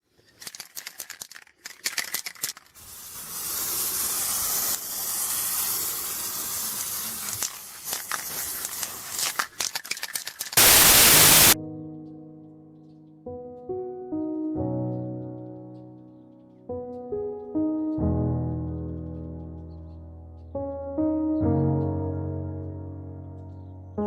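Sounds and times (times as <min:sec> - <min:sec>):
crackling and rustling: 0:00.0 - 0:02.9, 0:03.5 - 0:11.6
burst of static: 0:10.6 - 0:11.6
soft piano music: 0:11.6 - 0:24.0.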